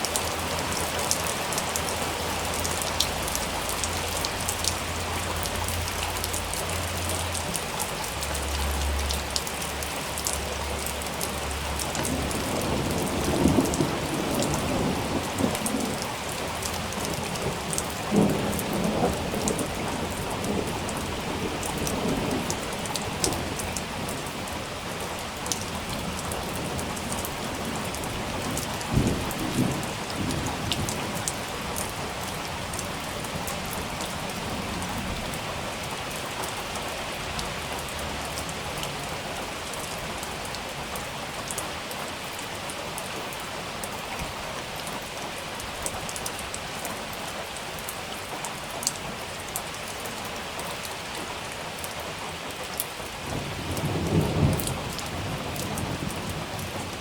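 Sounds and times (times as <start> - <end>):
raindrops ticking: 0.0 - 57.0
steady rain falling: 0.0 - 57.0
thunder rumbling: 53.3 - 57.0.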